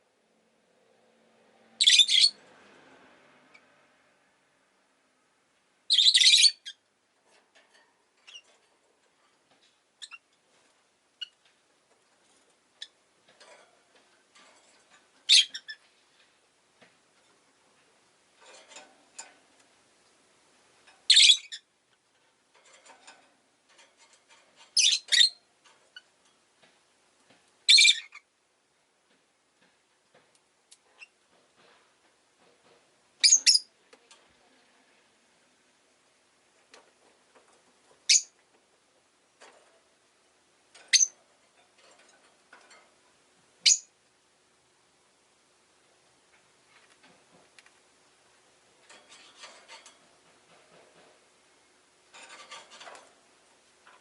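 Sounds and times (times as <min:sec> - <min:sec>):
bird chirping high-pitched: 0:01.8 - 0:02.4, 0:05.9 - 0:06.8, 0:15.3 - 0:15.8, 0:21.1 - 0:21.6, 0:24.8 - 0:25.4, 0:27.7 - 0:28.2, 0:33.2 - 0:33.7, 0:38.1 - 0:38.3, 0:40.9 - 0:41.2, 0:43.6 - 0:43.9
lovebird high-pitched calls: 0:01.8 - 0:02.4, 0:05.9 - 0:06.8, 0:10.0 - 0:10.2, 0:15.3 - 0:15.8, 0:21.1 - 0:21.7, 0:24.8 - 0:25.4, 0:27.7 - 0:28.3, 0:33.2 - 0:33.7, 0:38.1 - 0:38.4, 0:40.9 - 0:41.2, 0:43.6 - 0:43.9
faint clicks and scratching: 0:07.1 - 0:21.1, 0:21.9 - 0:24.8, 0:25.5 - 0:27.6, 0:29.0 - 0:33.1, 0:33.8 - 0:43.5, 0:45.9 - 0:54.0
soft bird chatter: 0:14.5 - 0:15.9, 0:21.0 - 0:21.7.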